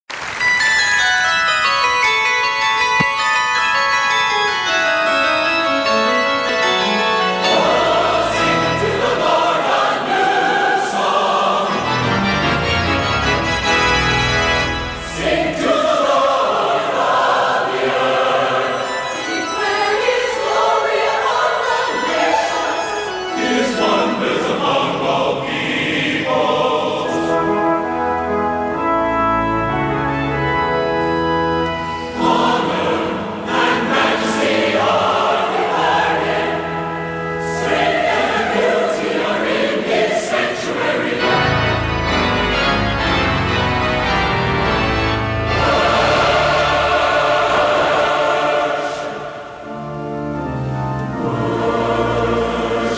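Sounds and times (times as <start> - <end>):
organ: 0.2 - 20.7, 22.0 - 52.9
carillon bells ringing: 0.4 - 8.8
choir singing: 5.4 - 28.4, 30.4 - 52.9.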